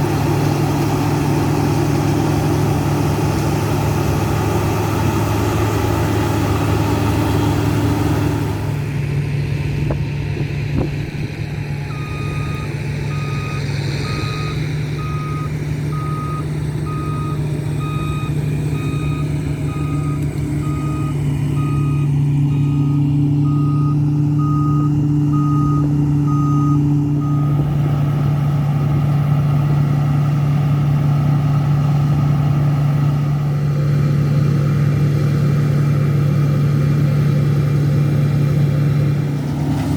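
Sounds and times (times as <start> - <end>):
heavy diesel machinery running: 0.0 - 39.9
reversing alarm beeping: 11.5 - 27.7.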